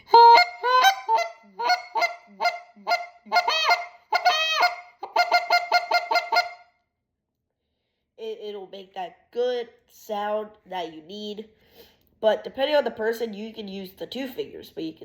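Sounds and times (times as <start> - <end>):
goose call honks: 0.1 - 6.6
goose call clucks: 0.1 - 6.7.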